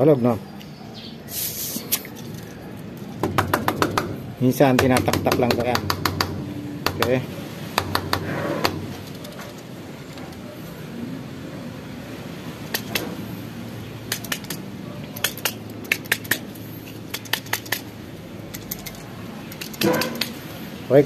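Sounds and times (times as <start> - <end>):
plastic sensor clicking and knocking: 3.2 - 7.2.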